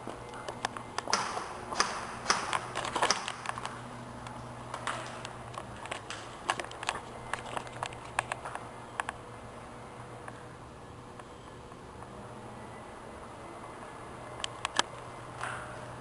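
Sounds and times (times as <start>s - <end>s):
faint steady hum: 0.0s - 16.0s
sharp clicks and snaps: 0.3s - 9.2s, 14.4s - 15.0s.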